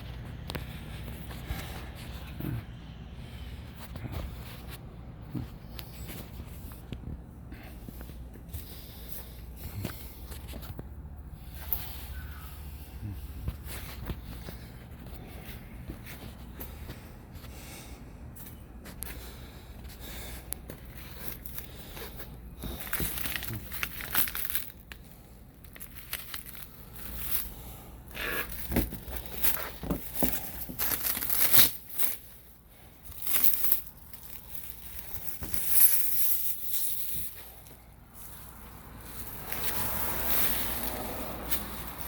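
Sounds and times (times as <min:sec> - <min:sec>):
packaging being torn and crumpled: 0:22.8 - 0:27.4, 0:28.3 - 0:32.3, 0:33.1 - 0:37.2.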